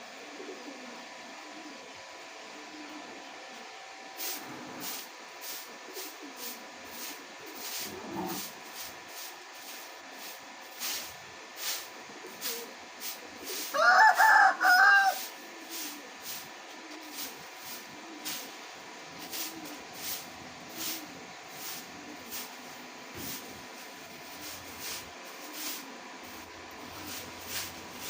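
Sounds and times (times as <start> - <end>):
rooster crowing: 13.7 - 15.3.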